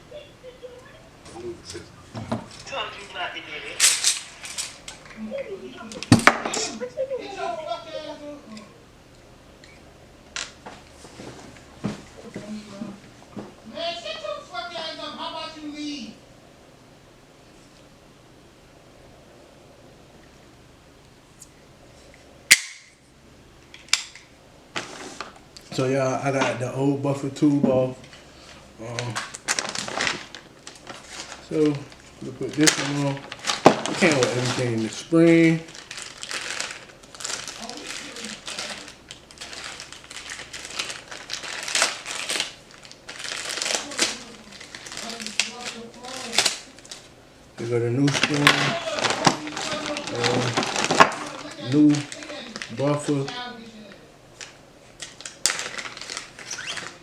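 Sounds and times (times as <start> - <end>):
packaging crinkling and rustling: 28.1 - 53.7, 54.3 - 57.0.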